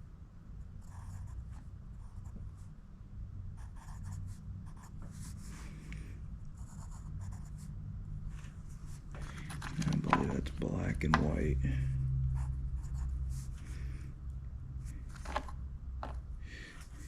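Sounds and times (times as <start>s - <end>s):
steady low hum: 0.0s - 17.0s
scratching and rustling: 8.3s - 10.5s, 14.9s - 16.2s.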